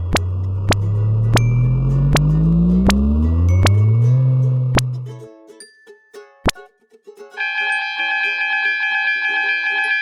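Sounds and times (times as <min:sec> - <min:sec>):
low motor-like hum: 0:00.0 - 0:05.1
light tinkling music notes: 0:01.1 - 0:08.4.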